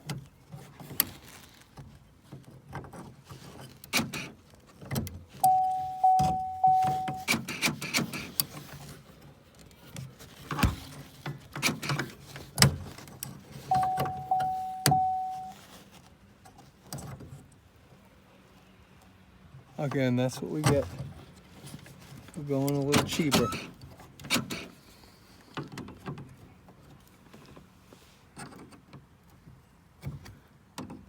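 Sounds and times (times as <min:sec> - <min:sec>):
electronic beep tone: 0:05.4 - 0:07.3, 0:13.7 - 0:15.5.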